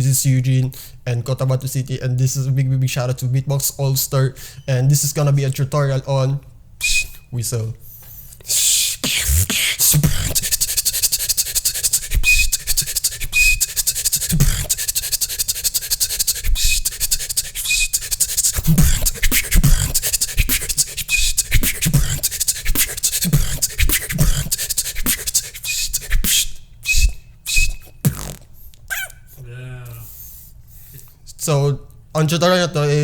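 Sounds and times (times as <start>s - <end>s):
high beatbox whistle notes: 6.8s - 7.3s, 8.0s - 29.4s
beatboxing clicks and bass kicks: 8.3s - 29.4s.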